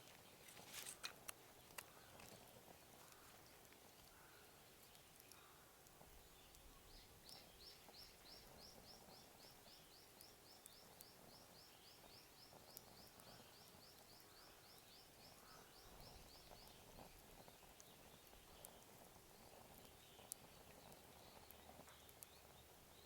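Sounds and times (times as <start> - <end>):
faint sharp clicks: 0.9 - 8.4, 12.0 - 14.4, 15.3 - 22.6
bird chirping: 6.2 - 23.0.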